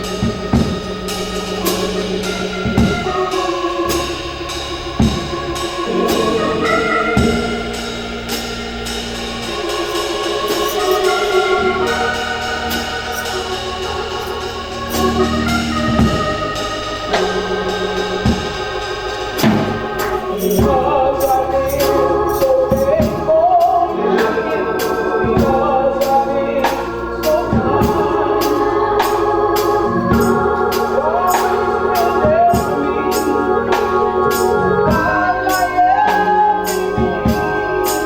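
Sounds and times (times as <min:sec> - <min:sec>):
wavering melody line: 0:00.0 - 0:23.0
drum strikes: 0:00.0 - 0:23.3
organ chords: 0:00.0 - 0:38.0.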